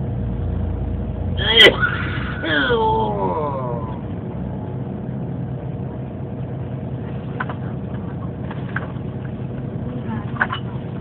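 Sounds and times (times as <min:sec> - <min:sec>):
engine running: 0:00.0 - 0:11.0
person groaning: 0:01.4 - 0:04.0.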